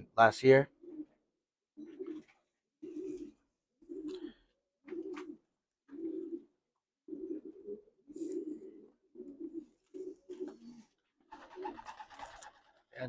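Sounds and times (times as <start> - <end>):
pigeons cooing: 0.7 - 13.0.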